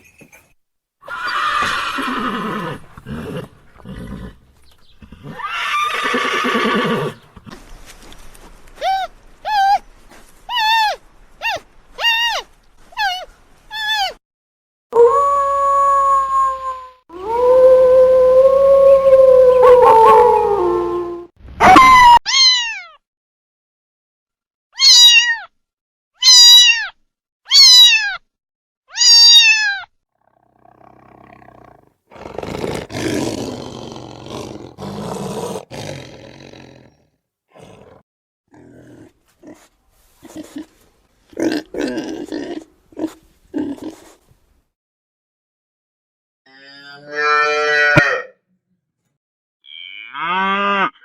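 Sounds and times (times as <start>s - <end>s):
rough low growling: 2.4s - 5.5s, 30.3s - 39.6s.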